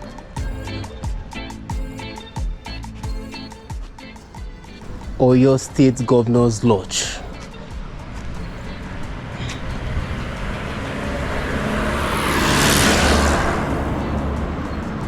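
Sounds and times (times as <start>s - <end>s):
low traffic rumble: 4.2s - 15.0s
vehicle driving past: 7.0s - 15.0s.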